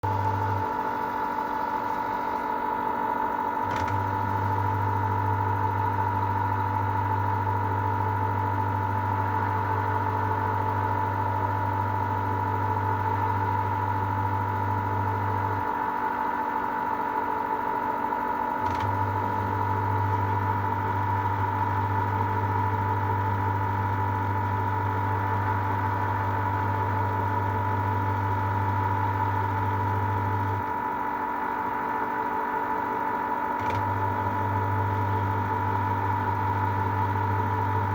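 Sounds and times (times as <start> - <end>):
drum motor humming low: 0.0 - 37.9
washer-dryer whine: 0.0 - 37.9
click: 3.6 - 4.0, 18.6 - 19.0.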